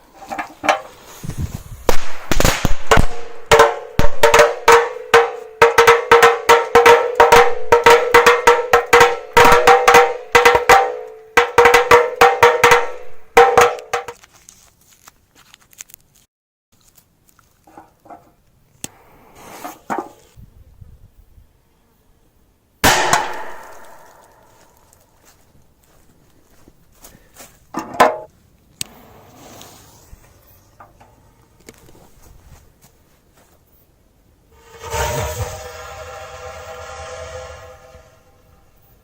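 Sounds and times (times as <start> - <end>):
firecracker bangs: 1.8 - 13.9, 22.8 - 24.6.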